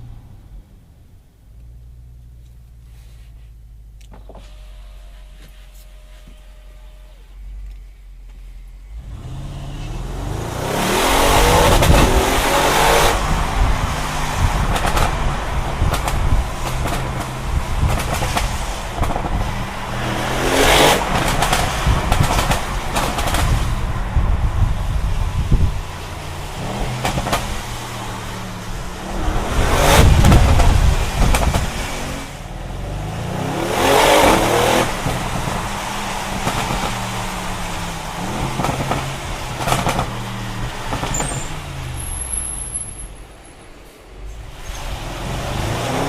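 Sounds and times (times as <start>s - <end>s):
exhaust crackles: 0.0s - 43.4s
car engine revving: 8.8s - 42.7s, 44.2s - 46.0s.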